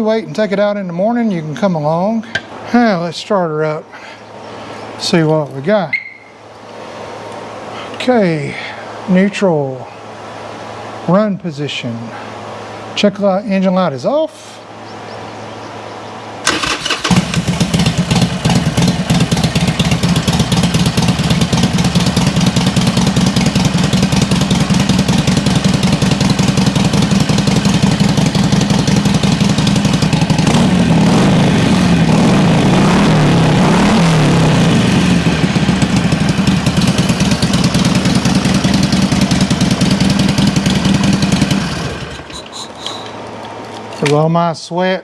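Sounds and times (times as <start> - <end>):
motorcycle engine idling and revving: 16.5 - 43.9.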